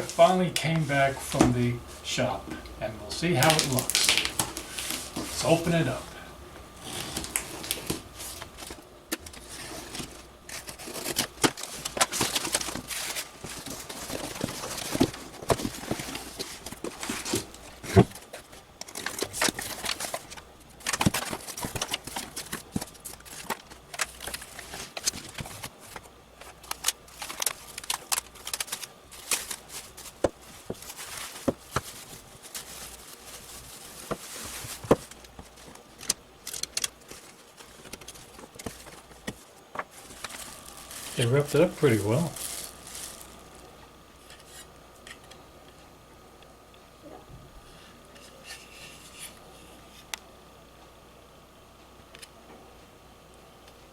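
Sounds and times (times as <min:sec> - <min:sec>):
packing material crinkling: 0:03.1 - 0:45.3.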